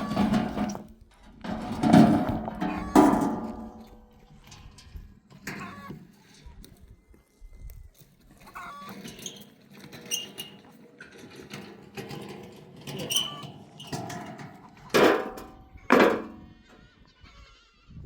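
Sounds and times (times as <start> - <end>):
sheep or goats bleating: 16.5 - 18.0.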